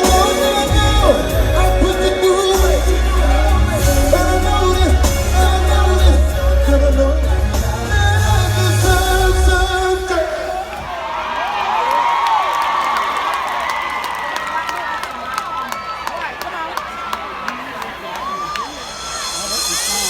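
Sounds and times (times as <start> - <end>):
heavy bass: 0.0 - 10.4
live band playing: 0.0 - 10.8, 17.6 - 20.0
man singing: 0.0 - 10.8.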